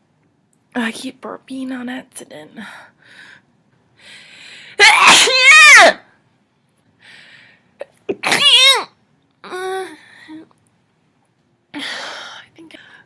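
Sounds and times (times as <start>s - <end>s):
person sneezing: 8.1s - 8.9s.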